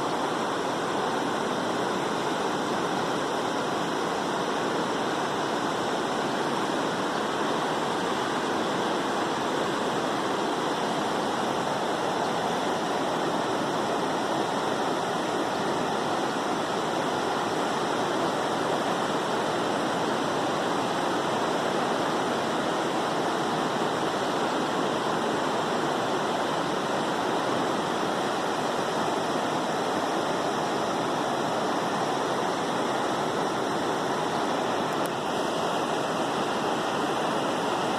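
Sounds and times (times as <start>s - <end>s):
river rushing: 0.0s - 37.9s.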